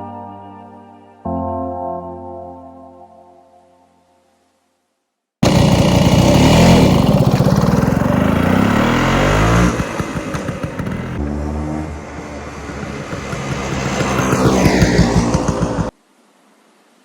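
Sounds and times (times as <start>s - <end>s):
scooter engine revving: 5.4s - 16.0s.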